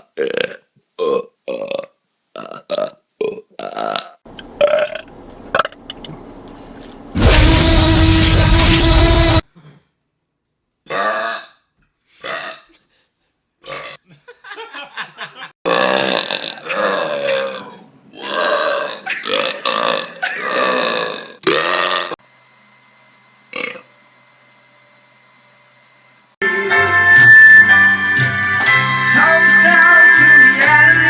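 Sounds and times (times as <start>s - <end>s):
people belching: 0.2s - 6.2s, 15.7s - 22.2s.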